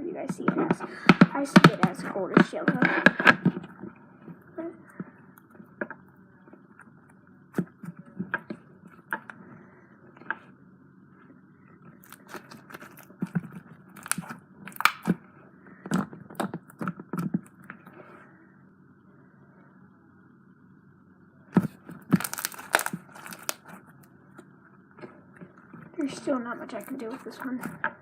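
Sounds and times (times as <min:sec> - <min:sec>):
slime squishing and popping: 0:12.0 - 0:15.2, 0:21.6 - 0:23.8.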